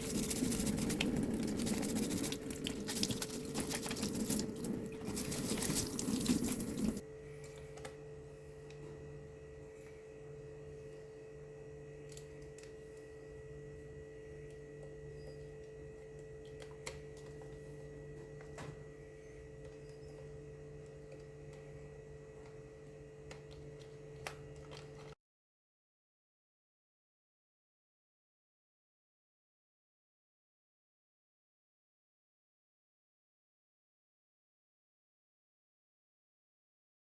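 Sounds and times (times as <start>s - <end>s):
water running in toilet cistern: 0.0s - 7.1s
faint steady hum: 0.0s - 25.2s.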